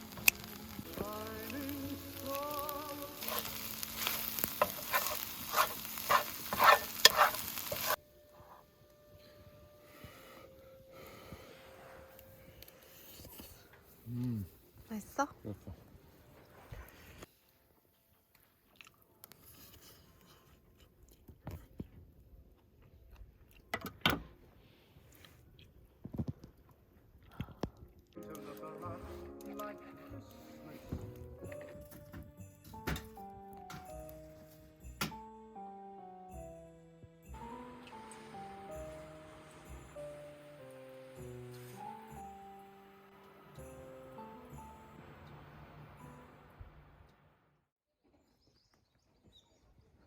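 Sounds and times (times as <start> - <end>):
food sizzling in a pan: 0.0 - 8.0, 37.3 - 46.2
person chewing food: 3.2 - 8.0, 18.3 - 19.4, 20.1 - 23.7
scraping and stirring in pan: 3.2 - 8.6.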